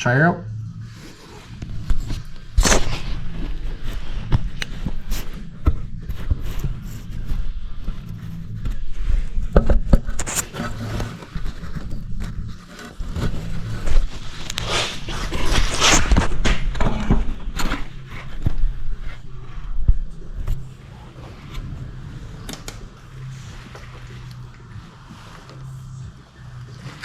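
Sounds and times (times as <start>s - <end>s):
low steady hum: 0.0s - 27.0s.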